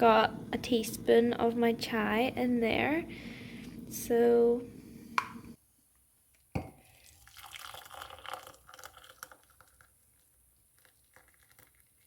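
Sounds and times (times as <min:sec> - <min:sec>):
water pouring into a mug: 0:06.8 - 0:12.0.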